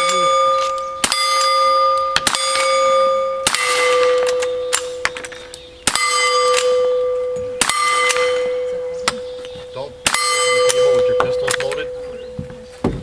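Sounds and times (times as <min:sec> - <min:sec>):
gunshots: 0:00.0 - 0:04.9, 0:07.6 - 0:08.6
steel plate ringing: 0:00.0 - 0:12.4.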